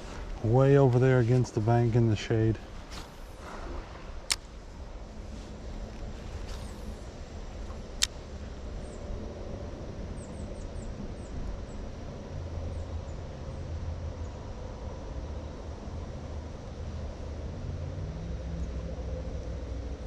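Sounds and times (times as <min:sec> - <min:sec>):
steady low rumble: 0:00.0 - 0:20.0
sharp click: 0:04.3 - 0:04.5.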